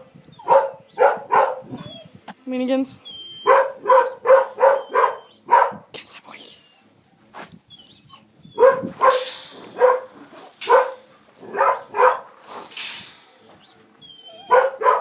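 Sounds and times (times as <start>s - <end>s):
dog barking: 0.5s - 1.8s, 3.4s - 5.8s, 8.6s - 12.3s, 14.5s - 15.0s.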